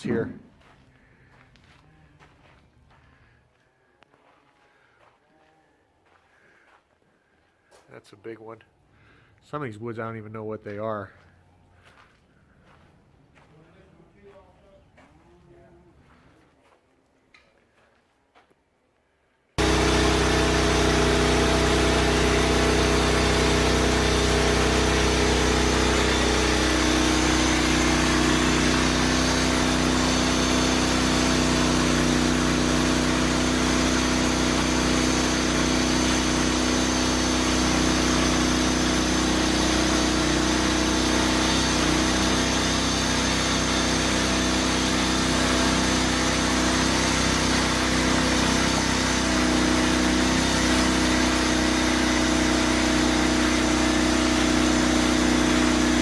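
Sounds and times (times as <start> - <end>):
engine running steadily: 19.6 - 56.0.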